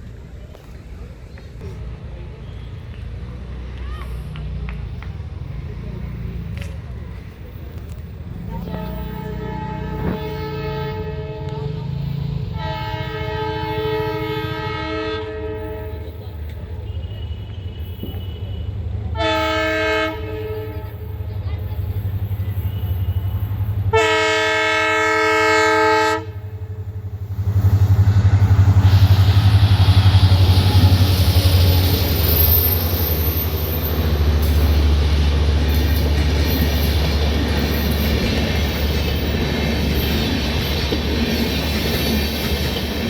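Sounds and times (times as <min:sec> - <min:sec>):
train running rumble: 0:00.0 - 0:43.0
locomotive horn blasts: 0:08.4 - 0:21.3, 0:22.4 - 0:32.0.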